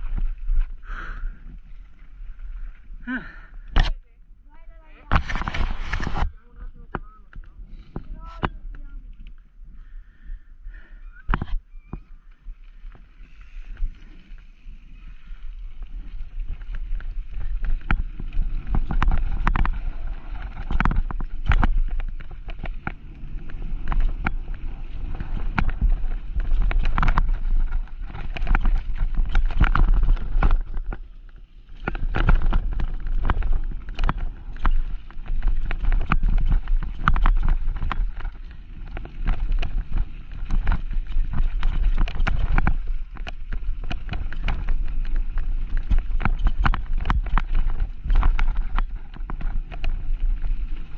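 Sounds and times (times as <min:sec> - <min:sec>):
wind rumbling on microphone: 0:00.0 - 0:50.9
bike clattering over rough ground: 0:11.3 - 0:50.9.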